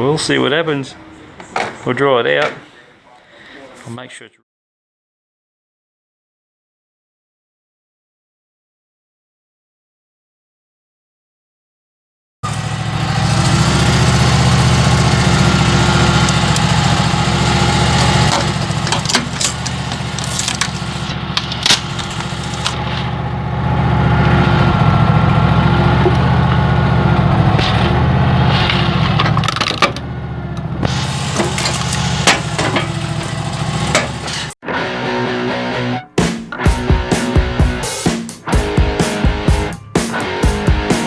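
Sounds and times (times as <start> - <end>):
machine motor humming: 12.4 - 29.5, 30.4 - 34.5.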